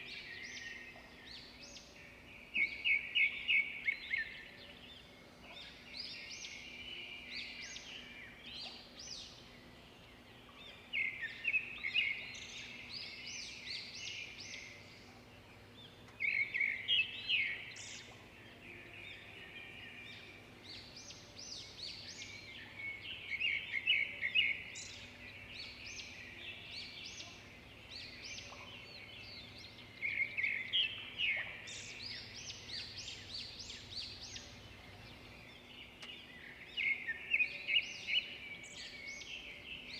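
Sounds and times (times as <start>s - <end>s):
songbird chirping: 0.0s - 39.9s.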